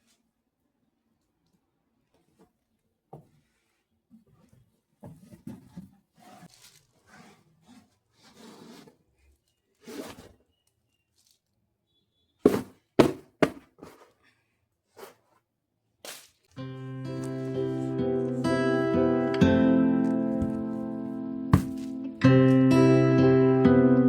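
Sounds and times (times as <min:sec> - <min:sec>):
soft rustling and shuffling: 0:01.2 - 0:09.4.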